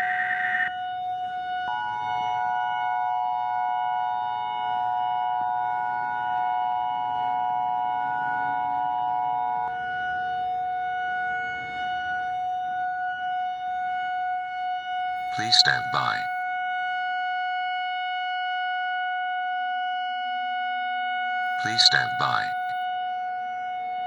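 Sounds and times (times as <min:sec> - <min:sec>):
harsh electronic alert tones: 0:15.3 - 0:16.3, 0:21.6 - 0:22.7.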